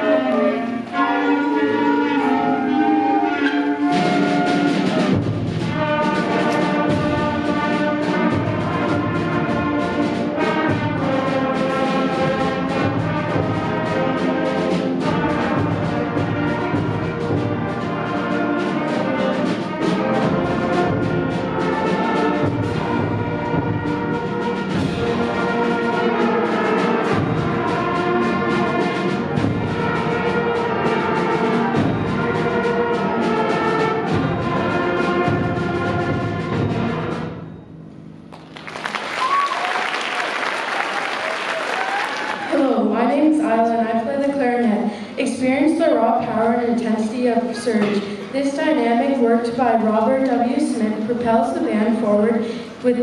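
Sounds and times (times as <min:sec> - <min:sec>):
concert band playing fanfare: 0:00.0 - 0:37.2, 0:38.3 - 0:43.0.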